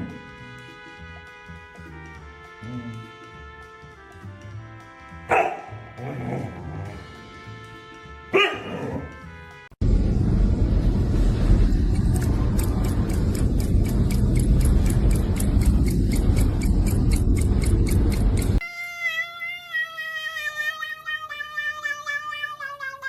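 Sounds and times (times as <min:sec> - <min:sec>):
dog barking: 0:05.3 - 0:06.4, 0:08.3 - 0:09.1
loud music with ticking beat: 0:12.2 - 0:18.6.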